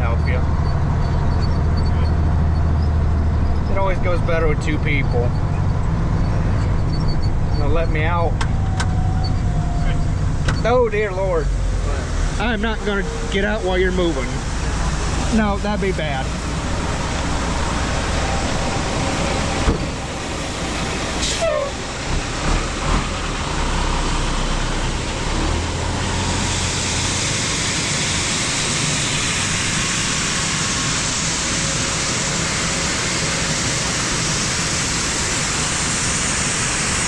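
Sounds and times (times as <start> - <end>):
tractor engine running: 0.0 - 37.0
short falling squeak: 5.3 - 7.4, 21.2 - 21.8.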